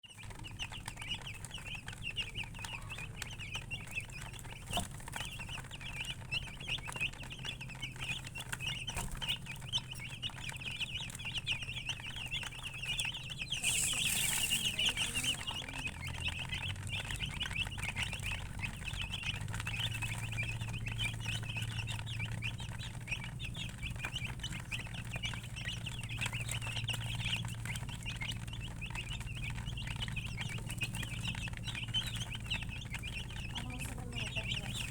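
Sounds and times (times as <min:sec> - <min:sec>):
chicks peeping: 0:00.0 - 0:34.9
rustling burst: 0:13.5 - 0:15.6.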